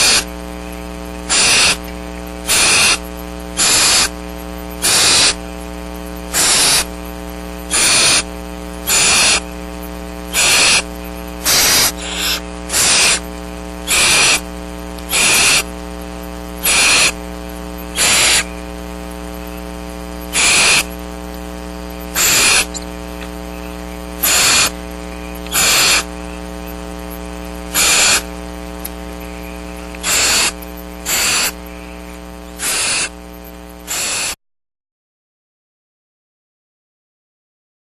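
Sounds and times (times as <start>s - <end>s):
owlets hissing begging calls: 0.0s - 0.2s, 1.3s - 1.8s, 2.5s - 3.0s, 3.6s - 4.1s, 4.8s - 5.4s, 6.4s - 6.9s, 7.7s - 8.2s, 8.9s - 9.4s, 10.3s - 10.9s, 11.5s - 13.2s, 13.9s - 14.4s, 15.1s - 15.6s, 16.6s - 17.2s, 18.0s - 18.5s, 20.4s - 20.9s, 22.2s - 22.8s, 24.2s - 26.1s, 27.8s - 28.3s, 29.3s - 31.9s, 32.6s - 33.1s, 33.9s - 34.4s
steady electrical hum: 0.0s - 34.4s.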